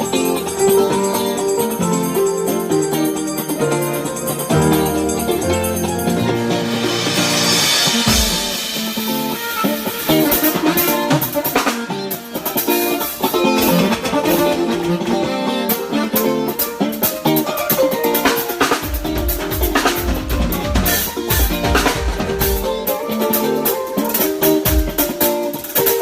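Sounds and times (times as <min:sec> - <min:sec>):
band instrument notes: 0:00.0 - 0:26.0
drum and rim hits: 0:04.2 - 0:15.3, 0:16.6 - 0:26.0
bass drum and full kit: 0:04.5 - 0:11.8, 0:18.7 - 0:22.9.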